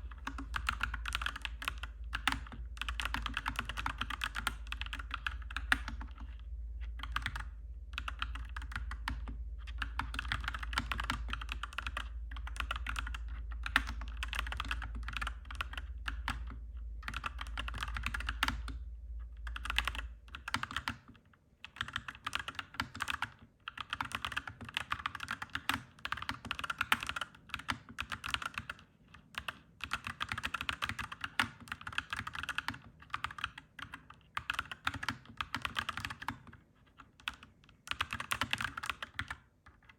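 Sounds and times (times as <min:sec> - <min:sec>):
steady low rumble: 0:00.0 - 0:20.4
mechanical keyboard typing: 0:00.1 - 0:18.8, 0:19.4 - 0:39.9.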